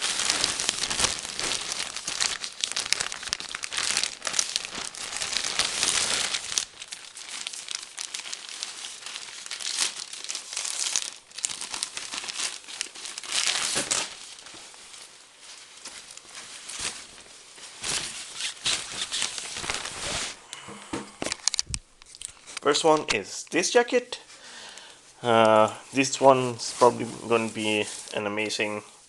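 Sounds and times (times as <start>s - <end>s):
packaging crinkling and rustling: 0.0s - 23.9s, 24.7s - 28.7s.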